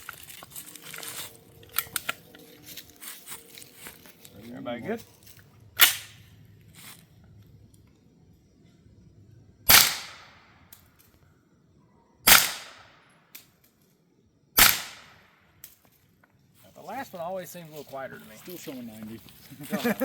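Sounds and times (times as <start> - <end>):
suppressed gunshots: 9.7 - 10.4, 12.3 - 13.0, 14.6 - 15.2.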